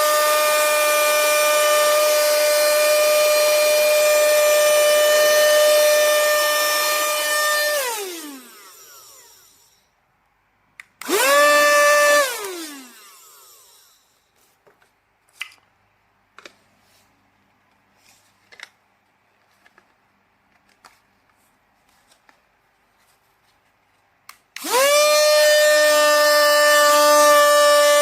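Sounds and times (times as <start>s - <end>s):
vacuum motor high whine: 0.0s - 9.8s, 11.0s - 14.1s, 24.6s - 28.0s.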